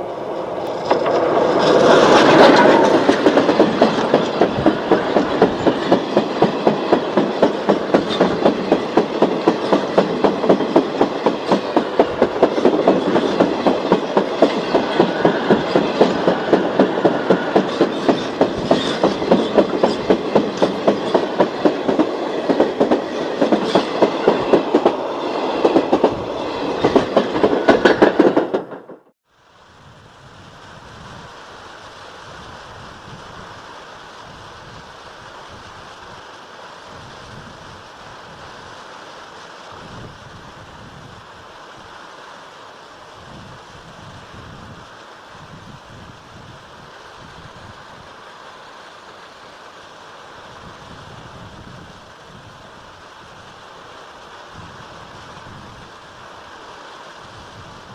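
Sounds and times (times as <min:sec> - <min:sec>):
wheels clacking on track joints: 0:00.2 - 0:29.1.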